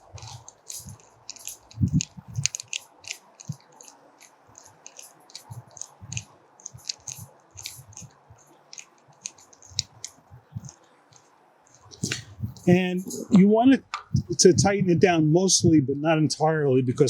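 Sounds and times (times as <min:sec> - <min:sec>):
screws clicking on metal strap: 0:00.0 - 0:13.2.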